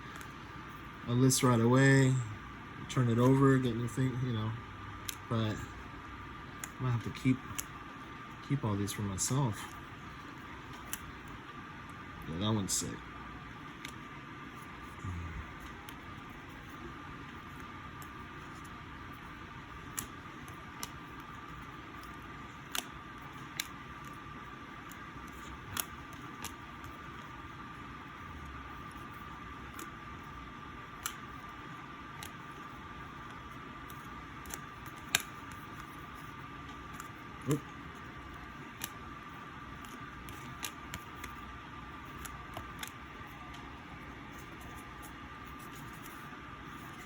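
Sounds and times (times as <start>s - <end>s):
thin high hum: 0.0s - 47.0s
cards clicking and tapping: 15.6s - 27.8s, 28.7s - 47.0s.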